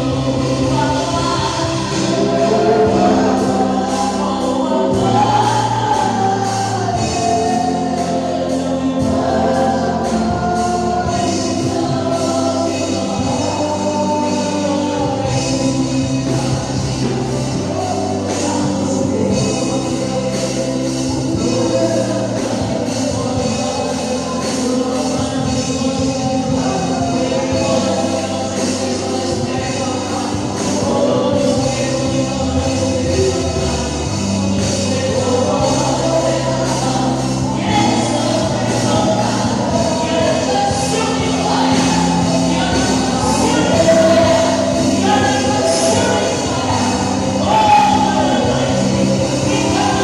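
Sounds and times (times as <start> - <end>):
choir singing gospel music: 0.0 - 50.0.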